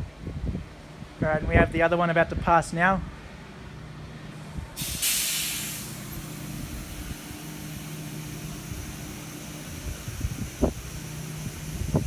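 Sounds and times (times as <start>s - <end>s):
wind buffeting microphone: 0.0s - 3.4s, 5.9s - 12.0s
diesel locomotive engine drone: 0.0s - 12.0s
constant hiss: 4.8s - 12.0s.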